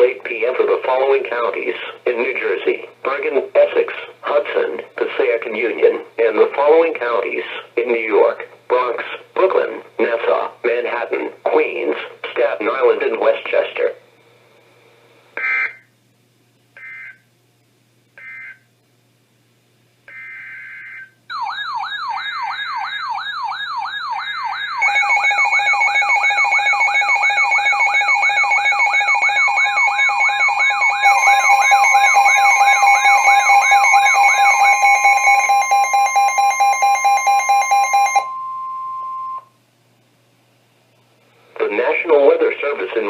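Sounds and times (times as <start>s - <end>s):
wailing siren-like alert tone: 20.1s - 39.3s
steady alarm tones: 20.1s - 39.5s
steady weather radio warning tone: 30.9s - 38.3s
digital data squawks: 31.0s - 38.2s.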